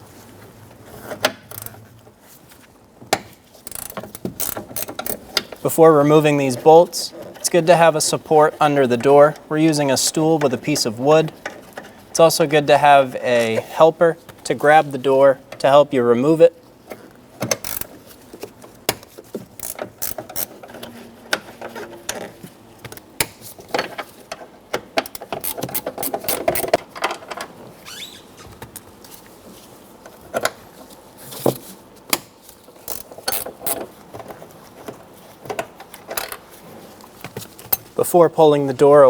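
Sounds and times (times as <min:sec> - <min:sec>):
hand ratchet clicking: 0:03.6 - 0:05.5, 0:17.5 - 0:18.0, 0:19.6 - 0:20.6, 0:25.0 - 0:26.8, 0:32.8 - 0:33.8.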